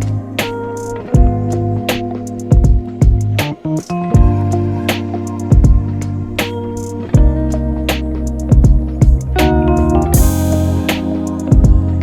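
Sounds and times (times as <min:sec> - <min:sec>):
drum beat: 0:00.0 - 0:12.0
sustained chords: 0:01.0 - 0:12.0
cymbal wash: 0:10.1 - 0:12.0.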